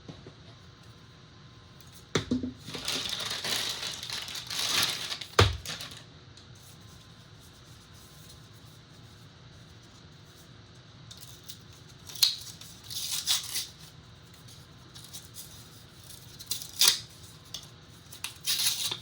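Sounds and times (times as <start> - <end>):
packaging crinkling and tearing: 2.6 - 6.1.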